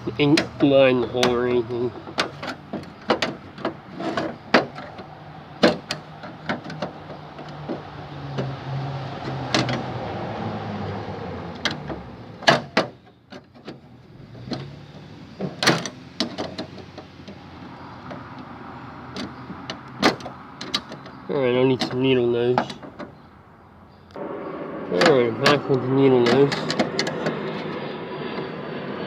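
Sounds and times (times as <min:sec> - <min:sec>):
low hum: 0:23.7 - 0:29.0.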